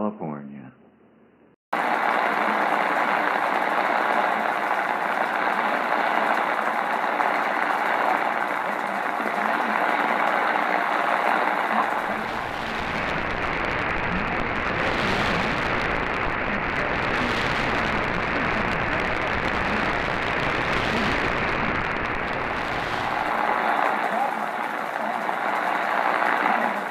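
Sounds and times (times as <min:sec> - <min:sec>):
radio static hiss: 0:01.8 - 0:26.9
faint voice in static: 0:05.4 - 0:21.7, 0:22.3 - 0:26.9
low rumble: 0:12.0 - 0:23.6.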